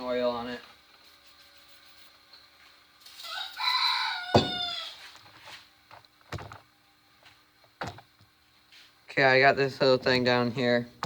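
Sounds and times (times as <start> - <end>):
bird crowing: 3.2 - 5.1.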